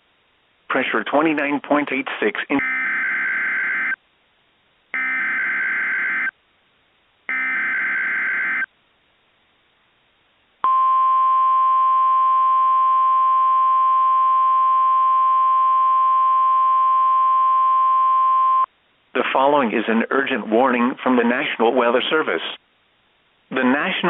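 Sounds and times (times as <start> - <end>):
steady warning alarm tone: 2.6 - 4.0, 5.0 - 6.3, 7.3 - 8.7.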